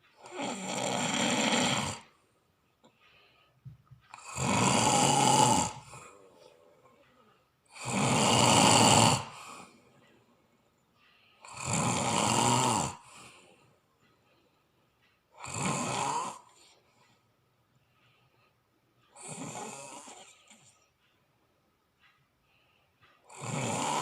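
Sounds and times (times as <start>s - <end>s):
person snoring: 0.2s - 2.2s, 4.1s - 6.6s, 7.7s - 9.8s, 11.4s - 13.4s, 15.4s - 16.8s, 19.1s - 20.7s, 23.3s - 24.0s.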